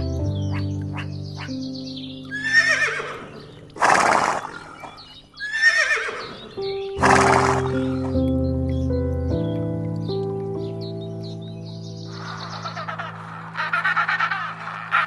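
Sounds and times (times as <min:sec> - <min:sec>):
background music sustained tones: 0:00.0 - 0:15.0
horse blowing harshly: 0:02.4 - 0:06.3, 0:07.0 - 0:08.1
horse whinnying: 0:02.4 - 0:08.1.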